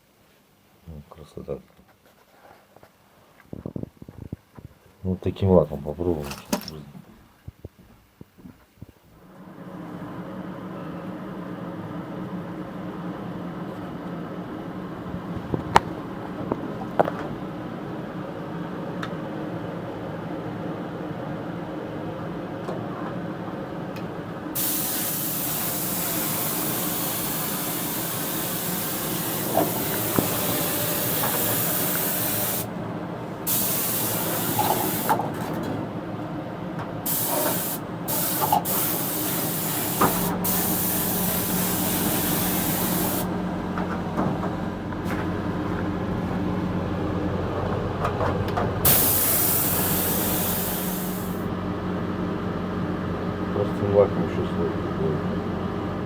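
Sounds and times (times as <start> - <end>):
spray gun hissing: 24.6 - 32.7, 33.5 - 35.2, 37.1 - 43.3, 48.9 - 51.4.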